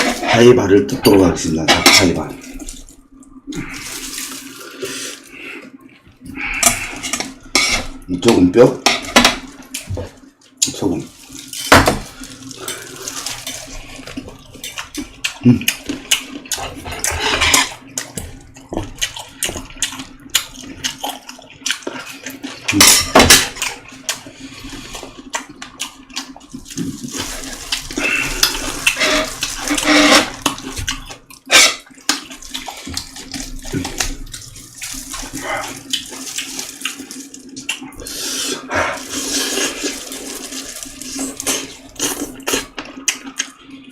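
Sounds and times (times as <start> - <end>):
wet chewing and slurping: 11.1 - 22.8, 23.4 - 43.9.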